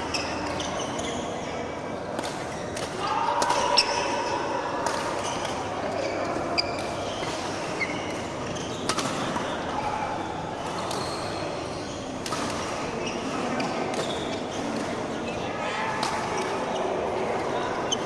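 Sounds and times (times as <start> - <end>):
murmur of voices: 0.0 - 18.0
shoe squeaks on court floor: 0.1 - 1.5, 6.0 - 8.9
racket hitting shuttlecock: 4.8 - 5.7, 8.2 - 9.6.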